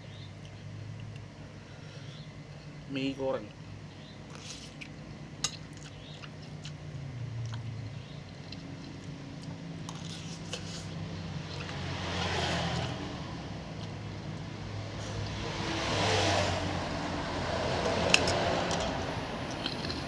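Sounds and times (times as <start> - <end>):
low engine hum: 4.9 - 20.0.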